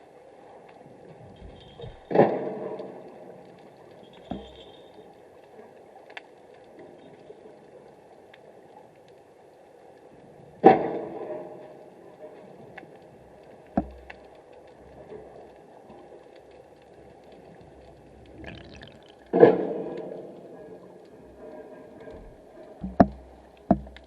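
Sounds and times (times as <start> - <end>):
underwater low rumble: 12.4 - 24.0
soft knock: 22.2 - 24.0.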